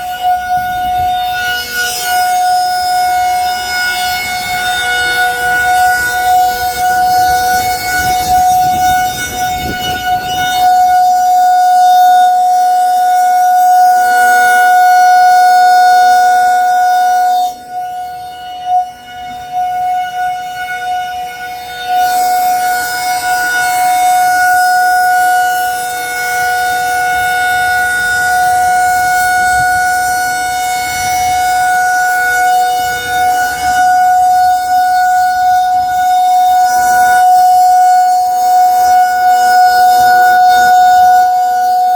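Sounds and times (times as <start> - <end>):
warning siren steady tone: 0.0 - 41.9.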